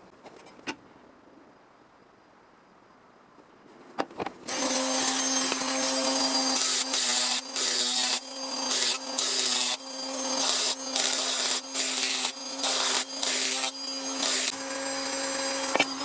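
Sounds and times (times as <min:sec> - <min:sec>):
power tool grinding sheet steel: 0:04.5 - 0:16.0.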